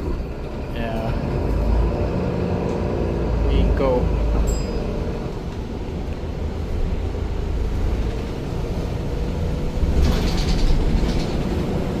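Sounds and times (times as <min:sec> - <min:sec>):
bus engine and road rumble: 0:00.0 - 0:12.0
brief rattle: 0:09.9 - 0:11.5.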